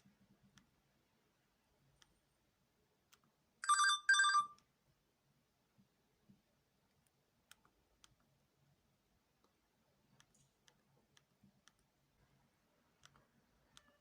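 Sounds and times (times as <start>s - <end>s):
electronic ring tone beeps: 3.6s - 4.6s
faint clicks: 9.4s - 14.0s.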